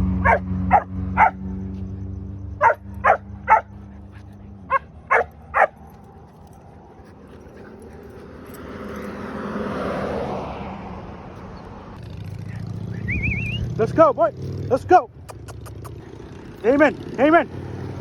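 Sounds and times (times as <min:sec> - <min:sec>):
dog barking: 0:00.2 - 0:01.5, 0:02.6 - 0:03.8, 0:04.7 - 0:05.9.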